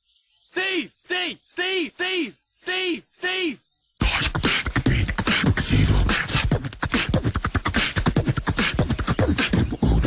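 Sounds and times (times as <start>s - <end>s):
beatboxing vocal percussion: 4.0s - 10.0s.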